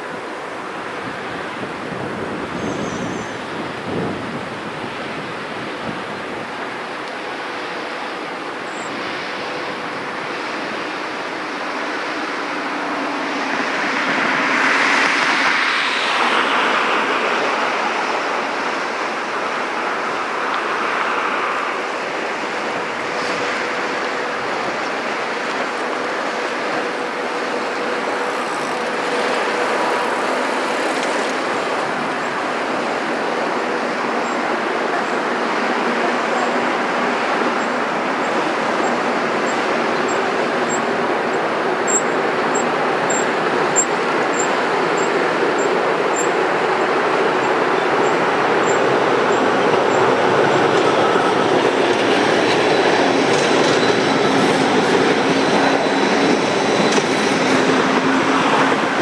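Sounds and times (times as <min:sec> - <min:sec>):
vehicle engine noise: 0:09.0 - 0:33.4, 0:47.6 - 0:59.0.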